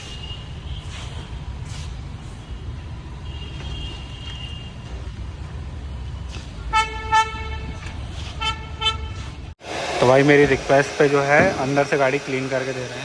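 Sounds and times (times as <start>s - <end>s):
car horn toots: 6.7s - 9.3s.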